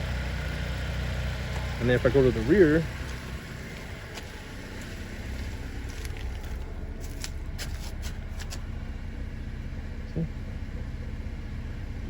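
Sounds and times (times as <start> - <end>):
car engine idling: 0.0 - 12.0
light irregular clicks and scuffs: 3.0 - 8.7.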